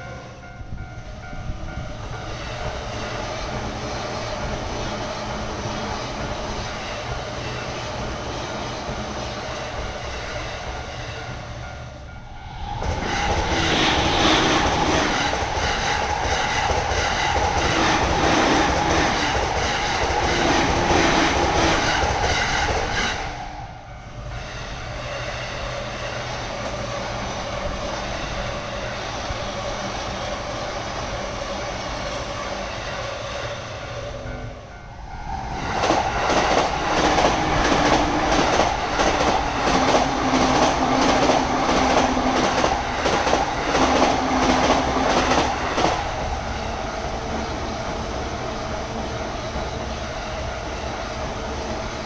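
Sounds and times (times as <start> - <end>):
crossing warning bell ringing: 0.0 - 4.7, 9.7 - 16.2, 22.6 - 26.5, 32.1 - 46.7
electric trains passing: 0.0 - 52.0
train wheels clattering over rail joints: 35.7 - 46.3.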